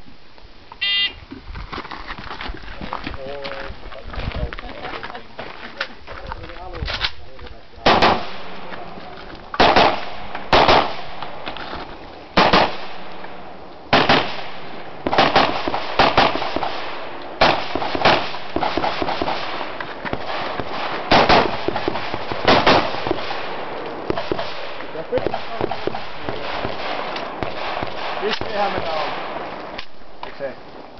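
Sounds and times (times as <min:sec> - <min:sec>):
rifle shots echoing: 0:07.8 - 0:11.6, 0:12.3 - 0:30.7.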